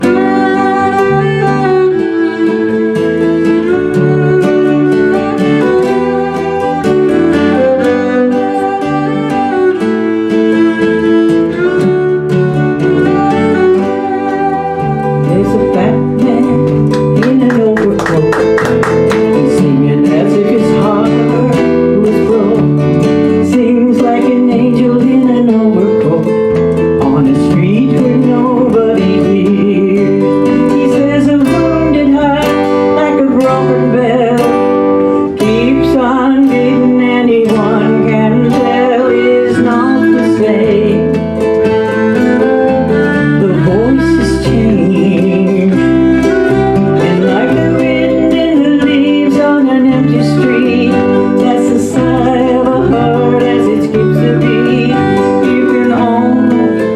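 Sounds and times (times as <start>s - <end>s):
bass line: 0.0s - 34.7s
strummed acoustic guitar: 0.0s - 56.9s
violin: 0.0s - 56.9s
woman singing: 0.0s - 56.9s.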